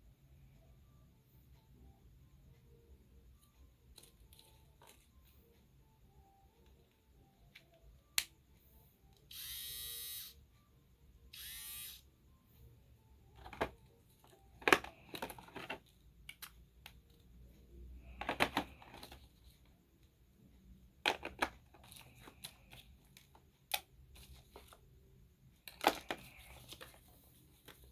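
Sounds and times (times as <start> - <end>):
electric hair trimmer buzzing: 9.3 - 10.4, 11.4 - 12.0
clicks and plastic handling: 13.4 - 17.2, 18.0 - 19.3, 21.0 - 24.8, 25.6 - 27.9.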